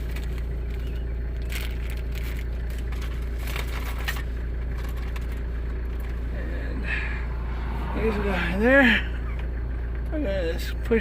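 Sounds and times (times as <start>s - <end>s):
clicks and crinkles of handling: 0.0s - 6.2s
steady low hum: 4.2s - 10.8s.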